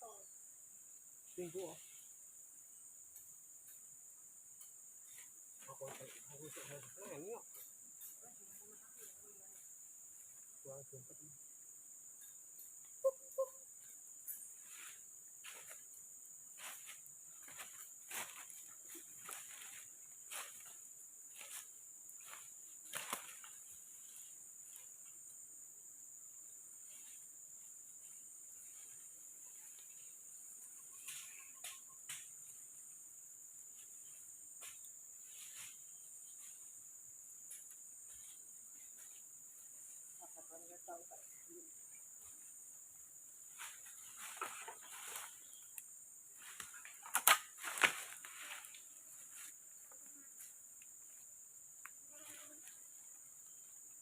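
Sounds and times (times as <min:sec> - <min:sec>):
forest insects droning: 0:00.0 - 0:54.0
rustling in undergrowth: 0:16.5 - 0:25.2, 0:43.4 - 0:50.5.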